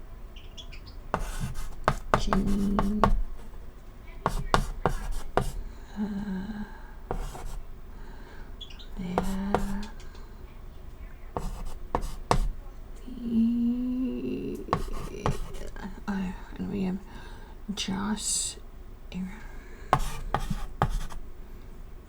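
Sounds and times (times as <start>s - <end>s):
soft hums: 0.0s - 22.0s
chalk tapping and scraping on chalkboard: 1.1s - 3.6s, 4.2s - 5.6s, 7.1s - 7.7s, 9.1s - 10.0s, 11.4s - 12.7s, 14.6s - 15.8s, 19.9s - 21.3s.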